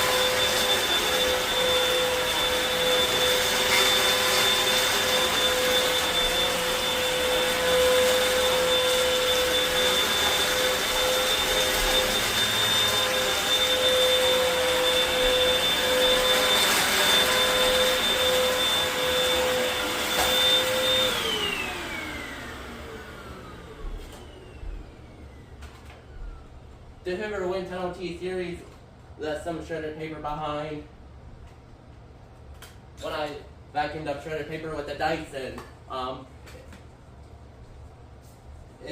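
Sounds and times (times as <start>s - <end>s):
vacuum cleaner whine: 0.0s - 28.1s.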